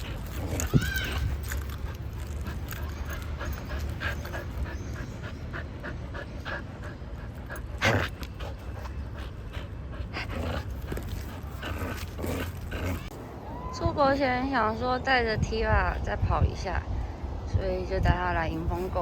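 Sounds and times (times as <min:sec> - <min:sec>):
dog panting: 0:00.0 - 0:13.1.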